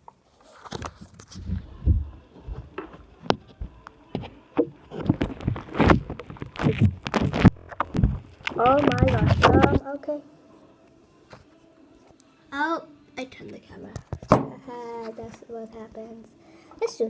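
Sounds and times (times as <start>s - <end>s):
camera handling bumps and rubbing: 4.9s - 9.8s.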